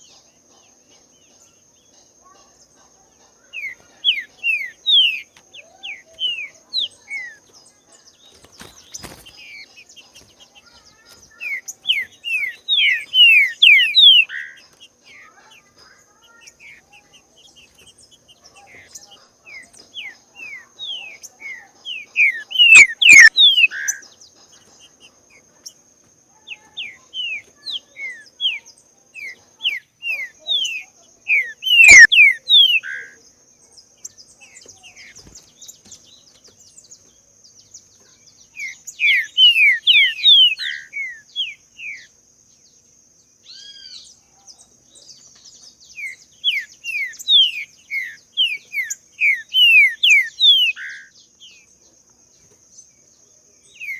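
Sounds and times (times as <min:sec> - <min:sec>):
bird singing whistled notes: 0:08.9 - 0:15.4, 0:16.0 - 0:24.1, 0:26.6 - 0:33.2, 0:38.3 - 0:42.1, 0:45.0 - 0:51.7.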